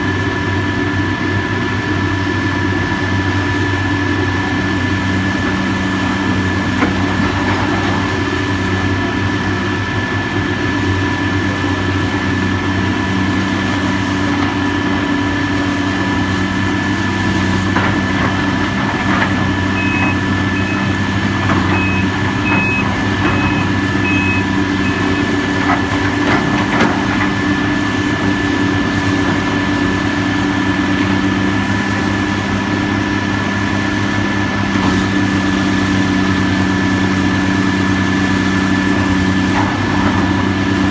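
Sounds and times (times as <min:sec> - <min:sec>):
diesel machinery running: 0:00.0 - 0:40.9
engine whine: 0:00.0 - 0:40.9
backup alarm beeping: 0:19.7 - 0:25.4.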